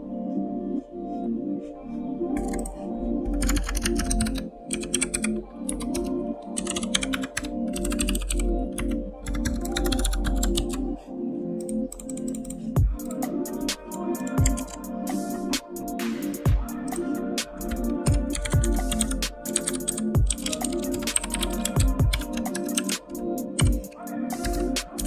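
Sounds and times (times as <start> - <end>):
background music: 0.0 - 25.0
typing on computer keyboard: 2.4 - 2.7, 3.3 - 10.8, 11.7 - 13.2, 13.9 - 14.8, 17.7 - 25.0.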